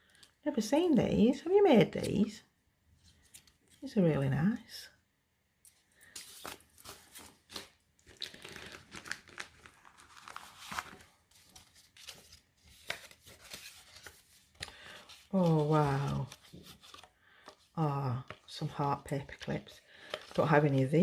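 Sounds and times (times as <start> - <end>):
paper and plastic crinkling: 5.7 - 21.0.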